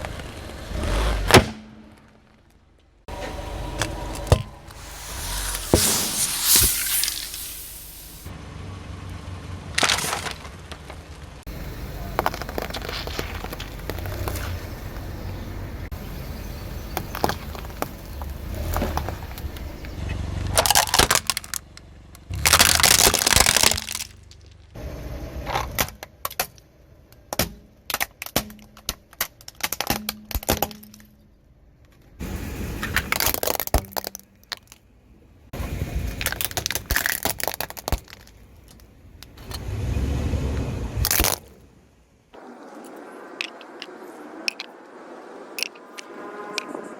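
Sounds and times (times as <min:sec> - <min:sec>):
low car rumble: 0:00.0 - 0:25.8, 0:34.4 - 0:42.4
tyres crushing brittle objects: 0:04.7 - 0:08.3, 0:20.6 - 0:21.7, 0:22.3 - 0:24.6, 0:36.2 - 0:38.9.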